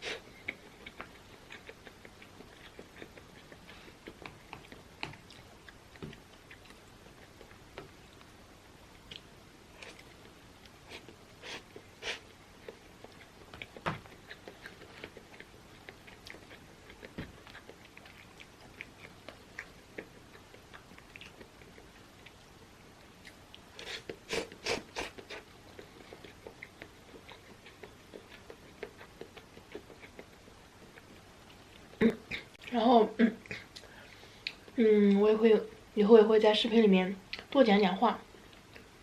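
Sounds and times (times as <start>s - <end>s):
quiet chewing: 0.0s - 34.8s, 37.2s - 37.6s, 38.2s - 39.0s
mouth clicks and smacks: 0.1s - 8.3s, 10.9s - 22.4s, 23.2s - 32.7s.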